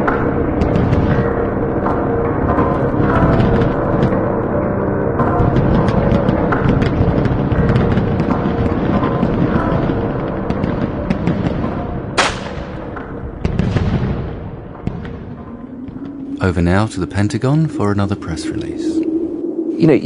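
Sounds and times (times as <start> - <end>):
heavy low rumble: 0.0 - 20.0
gunshots and blasts: 0.1 - 1.4, 5.2 - 16.0
sharp crack: 12.2 - 16.1.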